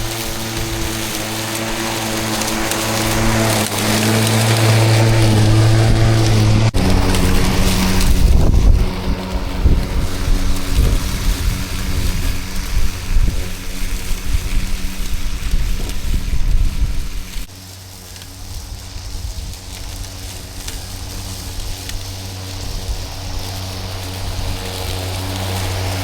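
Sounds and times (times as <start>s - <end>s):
electric lawn mower humming: 0.0s - 26.0s
gusty low rumble: 4.8s - 17.5s.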